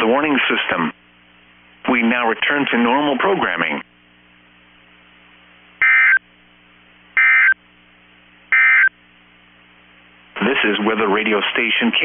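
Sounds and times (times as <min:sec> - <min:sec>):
faint steady hum: 0:00.0 - 0:12.0
buzzy warbling data tones: 0:05.8 - 0:06.2, 0:07.2 - 0:07.6, 0:08.5 - 0:08.9.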